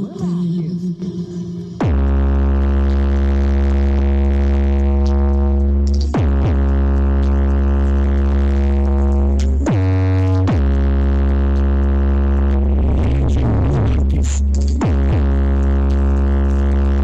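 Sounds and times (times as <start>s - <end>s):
electronic music with synth bass: 0.0s - 17.0s.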